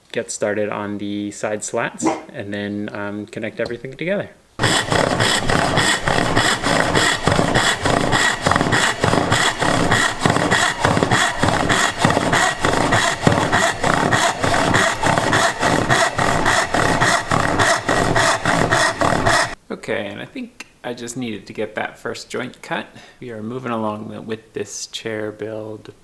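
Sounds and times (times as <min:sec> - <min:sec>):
hand saw cutting wood: 0:04.6 - 0:19.6.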